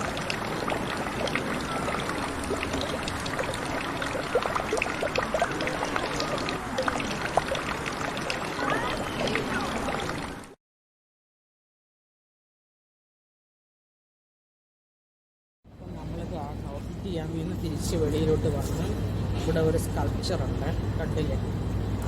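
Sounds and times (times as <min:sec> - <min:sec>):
water trickling and splashing: 0:00.0 - 0:10.6.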